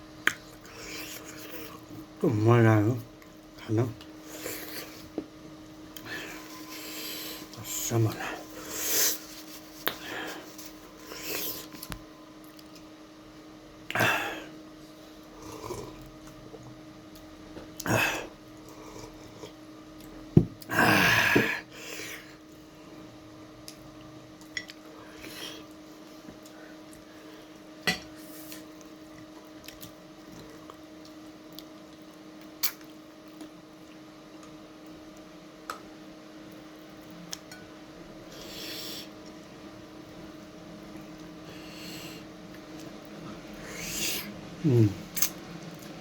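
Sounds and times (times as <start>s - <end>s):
steady low hum: 0.0s - 46.0s
faint clicks of eating: 11.6s - 12.9s, 28.5s - 35.9s
person eating mouth sounds: 43.6s - 45.9s.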